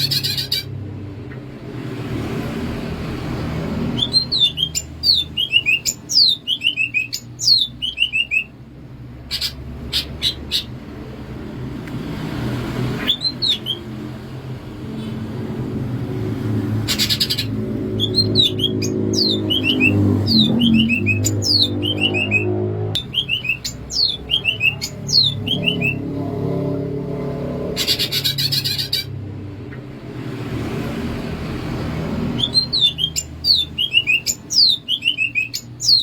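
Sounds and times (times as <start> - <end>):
bird singing whistled notes: 4.0 - 8.5, 13.0 - 13.9, 16.9 - 26.0, 32.4 - 36.0.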